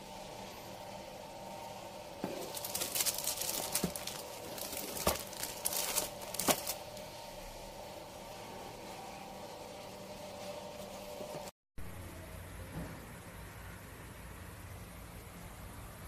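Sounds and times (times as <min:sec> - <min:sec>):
plastic packaging crinkling and tearing: 0:02.3 - 0:07.0.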